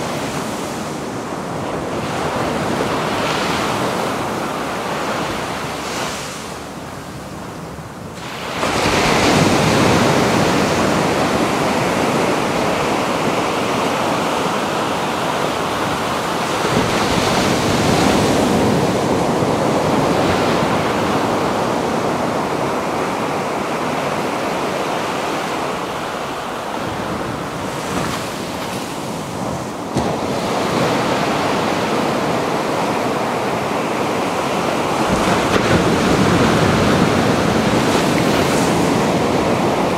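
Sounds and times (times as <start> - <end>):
surf breaking on beach: 8.2 - 39.9.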